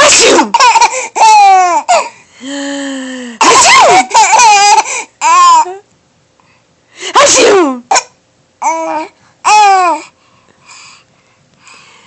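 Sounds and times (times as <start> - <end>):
baby girl laughing: 3.4 - 5.6.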